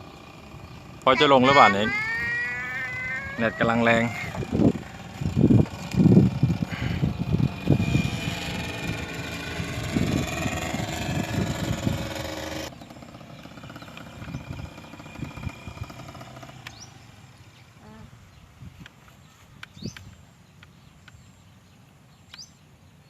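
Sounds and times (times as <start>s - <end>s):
wind buffeting microphone: 0.0s - 17.0s, 18.1s - 20.3s
paramotor engine running: 0.0s - 17.9s.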